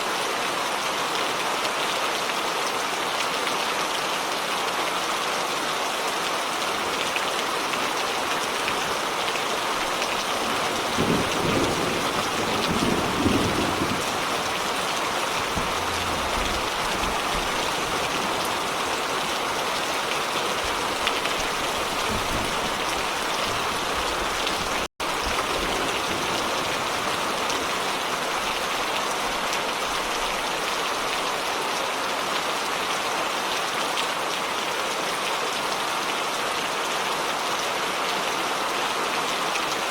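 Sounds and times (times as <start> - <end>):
heavy rain falling: 0.0 - 39.9
low thunder rumble: 9.6 - 27.9.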